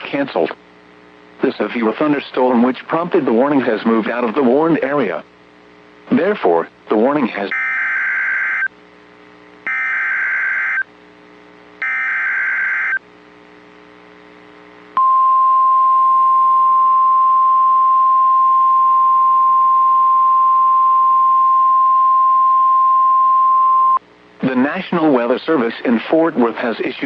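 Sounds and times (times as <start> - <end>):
steady warning alarm tone: 7.5 - 8.7, 9.7 - 10.9, 11.8 - 13.0
warbling data tone bursts: 9.7 - 10.9, 11.8 - 13.0.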